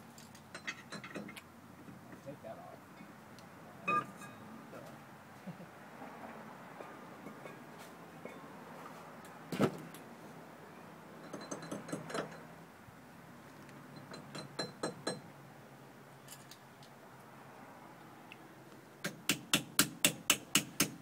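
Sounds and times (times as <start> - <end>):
light metallic clinks: 11.2 - 12.5.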